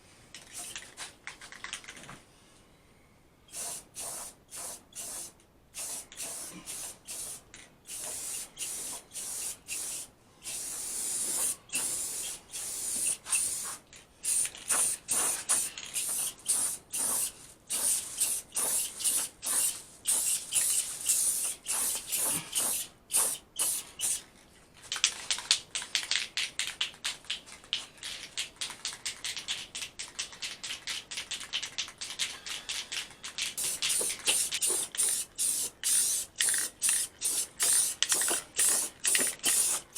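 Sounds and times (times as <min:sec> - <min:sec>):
spray paint hissing bursts: 0:00.4 - 0:01.2, 0:03.5 - 0:24.2, 0:32.0 - 0:39.9.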